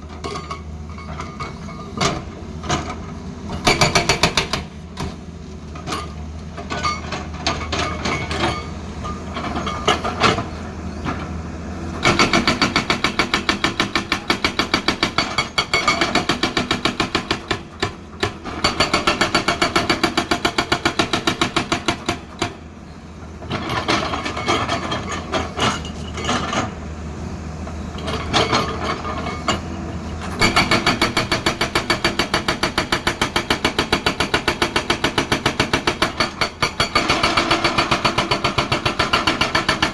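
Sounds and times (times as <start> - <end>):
excavator diesel engine hum: 0.0 - 39.9
hydraulic breaker hammering stone: 2.9 - 5.2, 12.0 - 22.6, 30.3 - 39.9.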